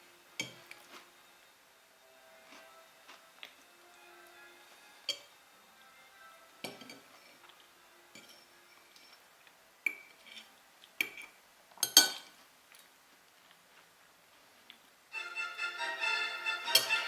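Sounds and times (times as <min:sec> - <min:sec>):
cutlery clinking against a plate: 0:00.4 - 0:01.0, 0:06.6 - 0:09.2, 0:09.9 - 0:12.4, 0:16.7 - 0:17.0.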